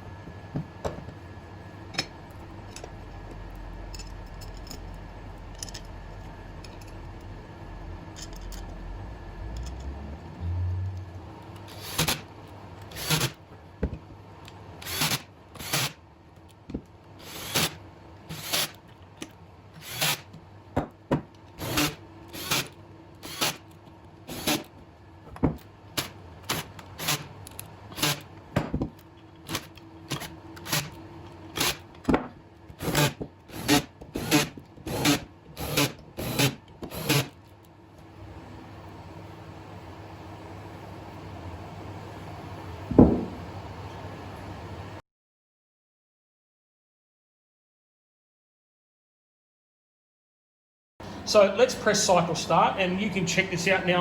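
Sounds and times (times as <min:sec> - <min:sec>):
low hum rising in pitch: 0:03.0 - 0:11.4.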